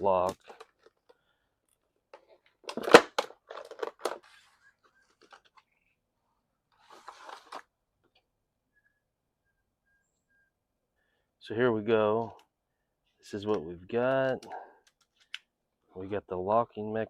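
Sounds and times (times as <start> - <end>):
packaging rustle: 2.7 - 5.6.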